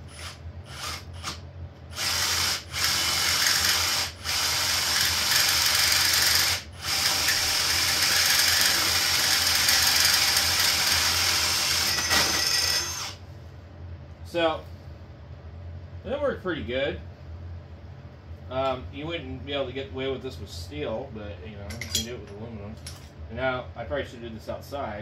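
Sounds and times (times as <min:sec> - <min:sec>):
drill grinding through metal: 0:00.0 - 0:13.2.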